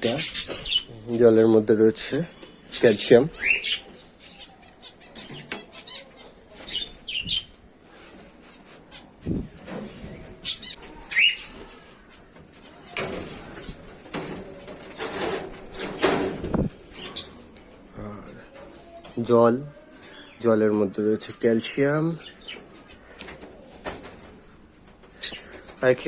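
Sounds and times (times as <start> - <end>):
birds chirping: 0.0 - 26.0
wings flapping in a cage: 8.0 - 18.0, 22.6 - 26.0.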